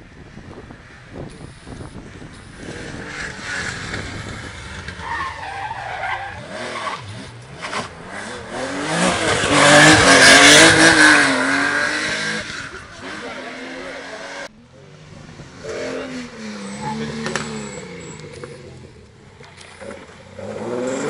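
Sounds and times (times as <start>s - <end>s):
rally car engine revving: 2.0s - 21.0s
tyres squealing: 4.9s - 7.1s.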